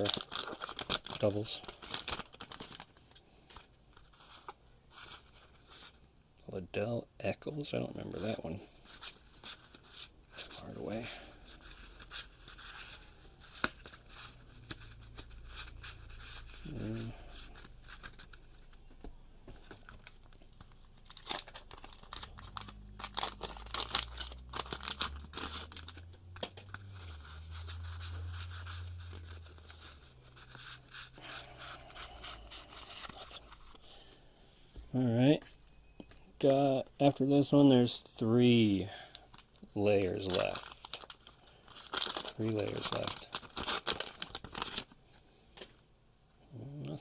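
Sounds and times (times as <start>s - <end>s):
wrappers tearing and crinkling: 0.0s - 3.7s, 19.6s - 33.9s, 39.3s - 45.0s.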